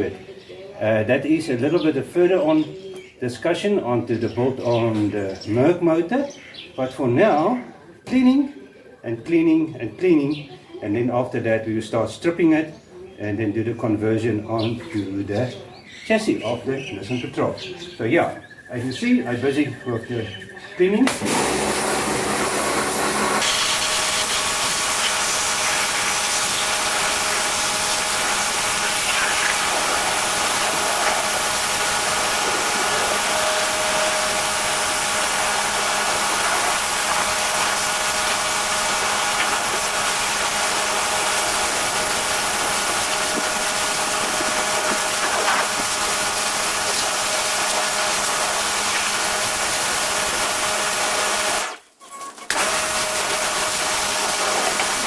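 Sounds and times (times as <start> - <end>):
motor hum: 21.1 - 51.7
pressure washer spray hissing: 21.1 - 51.8, 52.5 - 55.0.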